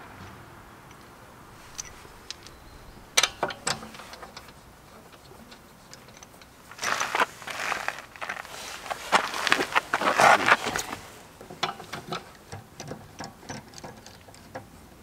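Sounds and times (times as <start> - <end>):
wrench scraping and rattling: 1.5 - 14.7
metal tools clicking and knocking: 1.6 - 2.6, 3.2 - 6.8, 10.8 - 14.7.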